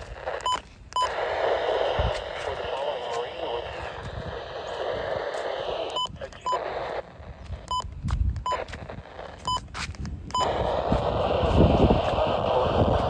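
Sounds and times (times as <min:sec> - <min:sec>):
short electronic beeps: 0:00.4 - 0:01.2, 0:06.0 - 0:06.6, 0:07.6 - 0:08.7, 0:09.4 - 0:09.7, 0:10.3 - 0:10.6.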